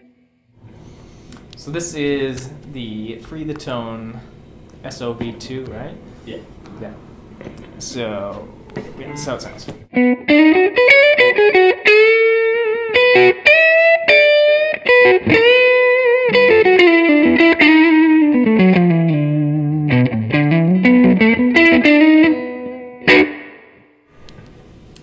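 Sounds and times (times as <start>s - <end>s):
overdriven electric guitar blues lead: 8.4s - 24.4s.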